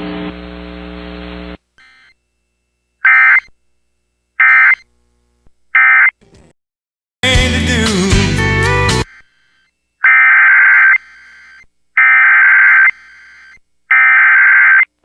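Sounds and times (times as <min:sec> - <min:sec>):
low broadcast hum: 0:00.0 - 0:06.5
screechy data tone bursts: 0:03.0 - 0:03.6, 0:04.4 - 0:04.9, 0:09.0 - 0:14.9
music: 0:07.2 - 0:09.1.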